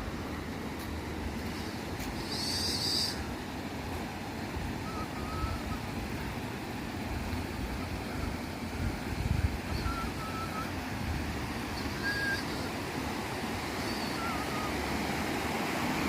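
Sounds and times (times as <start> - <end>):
waterfall roaring: 0.0 - 16.0
high whistling call: 2.2 - 3.2, 4.8 - 5.9, 9.7 - 10.8, 11.8 - 12.8, 13.7 - 14.8.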